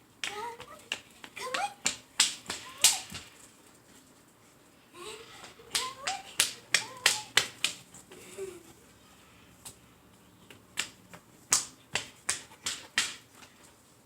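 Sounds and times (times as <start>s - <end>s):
dogs playing clicks and slaps: 0.2s - 4.7s, 5.3s - 8.2s, 10.4s - 13.8s.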